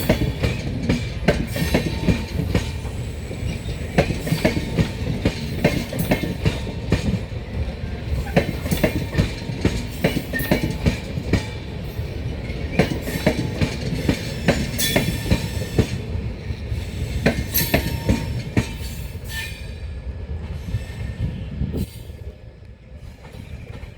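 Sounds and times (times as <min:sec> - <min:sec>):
train wheels clattering: 0:00.0 - 0:19.6
heavy train rumble: 0:00.0 - 0:23.9.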